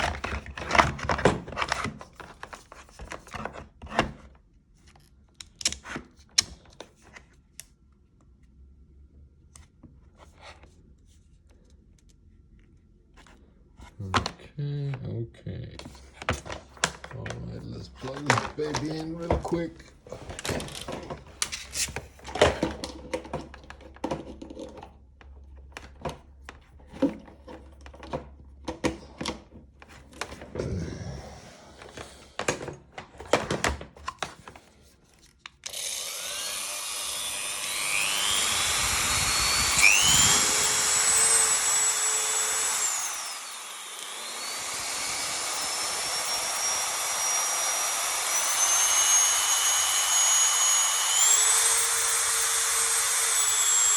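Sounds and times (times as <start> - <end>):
rotary tool motor whine: 35.6 - 53.9.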